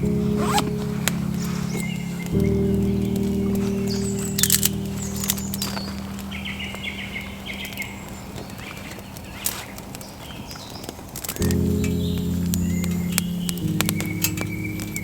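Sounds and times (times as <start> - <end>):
soft background music: 0.0 - 9.3, 11.4 - 15.0
birds singing: 0.0 - 15.0
sharp clicks: 7.5 - 15.0.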